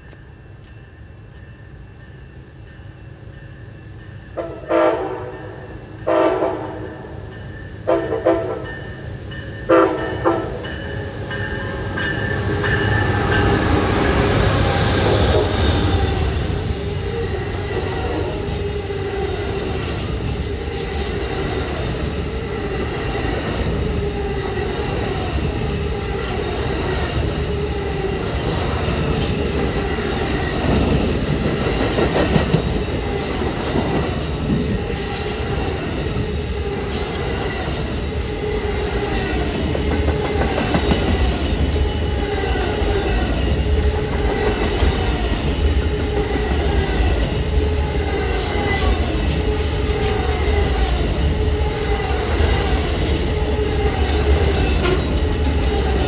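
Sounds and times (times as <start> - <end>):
train wheels rumbling on rail: 0.0 - 56.0
locomotive horn blasts: 4.4 - 7.2, 7.8 - 8.8, 9.7 - 10.6
wheels clicking on rail: 10.6 - 56.0.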